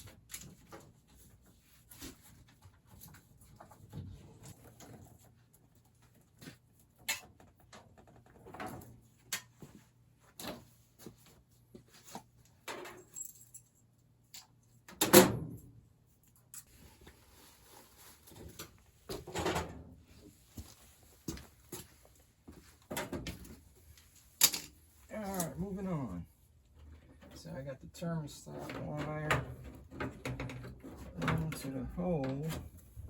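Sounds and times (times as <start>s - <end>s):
tools and parts clinking: 12.6s - 15.0s, 23.0s - 25.6s.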